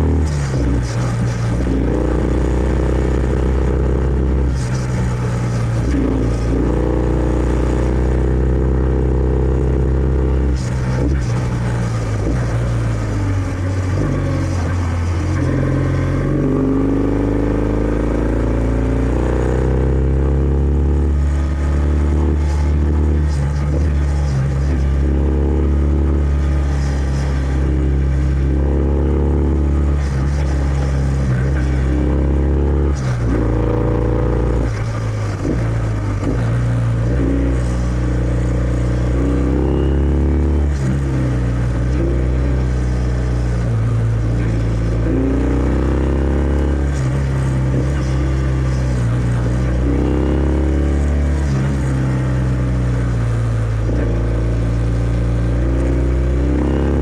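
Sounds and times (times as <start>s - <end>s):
motorcycle engine while riding: 0.0s - 57.0s.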